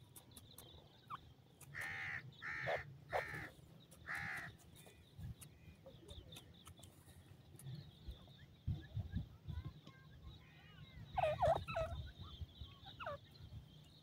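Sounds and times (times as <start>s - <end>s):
bird harsh calls: 0.4s - 7.2s, 10.2s - 13.5s.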